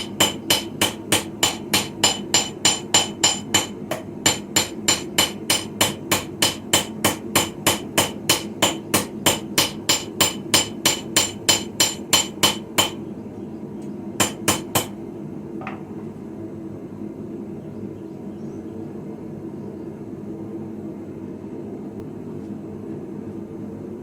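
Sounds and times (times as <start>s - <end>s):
hammer ringing on anvil: 0.0s - 13.0s
steady low hum: 0.0s - 24.0s.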